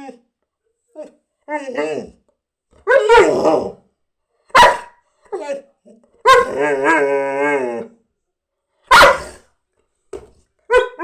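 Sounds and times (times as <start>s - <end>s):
dog barking: 4.5s - 5.0s, 6.2s - 6.6s, 8.9s - 9.4s, 10.7s - 11.0s
dog yipping: 4.6s - 5.6s, 10.7s - 11.0s
dog howling: 6.3s - 7.9s.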